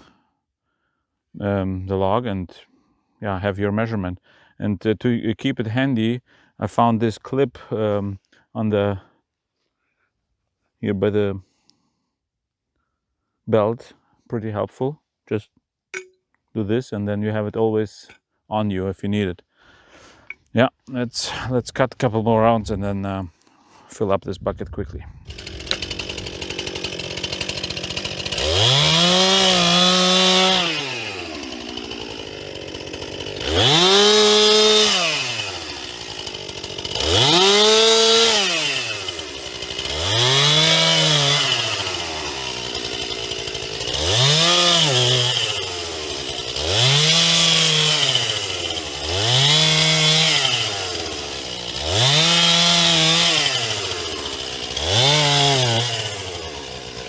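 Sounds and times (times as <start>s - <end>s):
chainsaw revving and idling: 25.2s - 57.0s.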